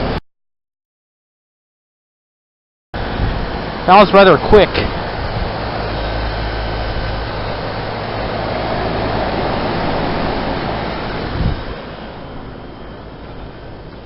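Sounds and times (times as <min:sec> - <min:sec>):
heat pump compressor and fan hum: 0:00.0 - 0:00.2, 0:03.0 - 0:14.0.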